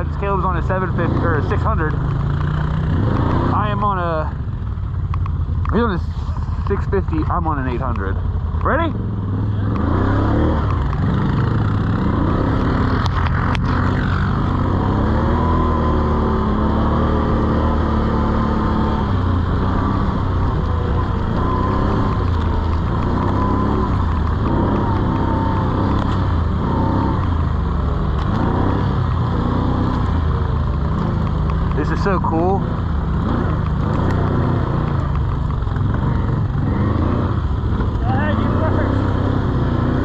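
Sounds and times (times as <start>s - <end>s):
quad engine revving: 0.0s - 4.4s, 6.6s - 40.0s
sharp clicks: 5.0s - 5.8s, 19.7s - 27.5s, 32.8s - 36.6s.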